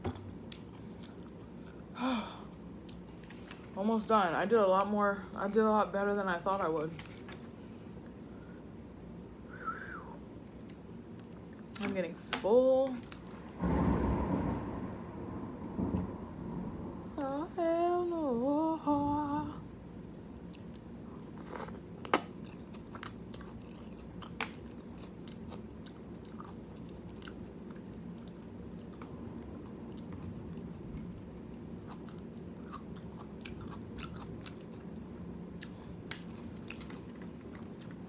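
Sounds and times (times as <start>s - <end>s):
rain: 13.4s - 17.8s
chewing noodles: 20.5s - 31.2s, 31.8s - 35.0s, 35.6s - 38.0s.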